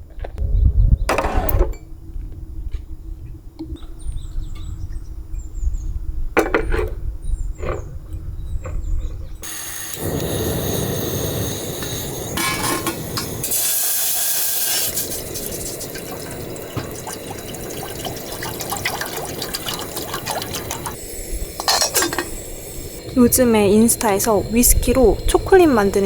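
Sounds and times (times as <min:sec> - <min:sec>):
water running and splashing: 0:09.4 - 0:23.0.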